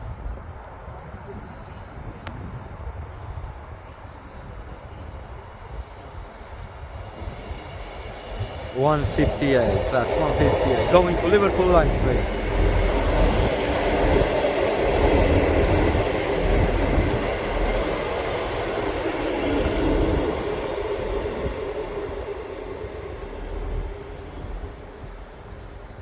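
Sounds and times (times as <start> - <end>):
diesel train rumbling: 5.8 - 26.0.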